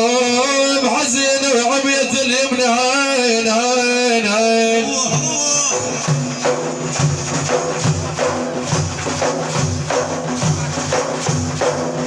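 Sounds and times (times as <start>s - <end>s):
hand percussion beat: 4.9s - 12.0s.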